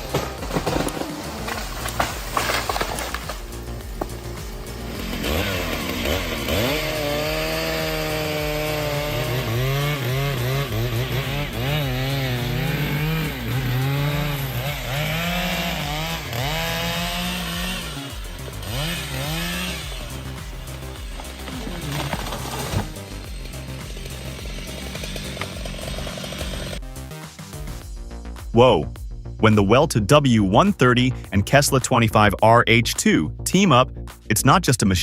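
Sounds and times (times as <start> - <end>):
chainsaw revving while cutting wood: 0.0 - 26.8.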